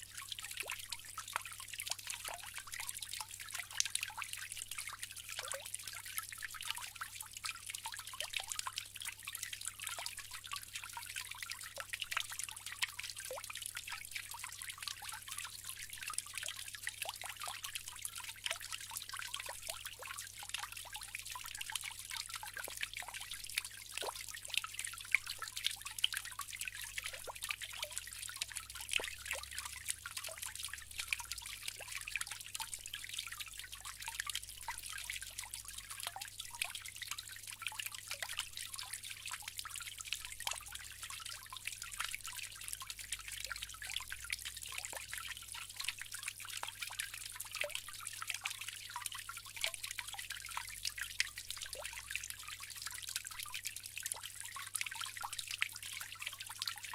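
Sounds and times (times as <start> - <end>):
water trickling from fountain spout: 0.0 - 56.9.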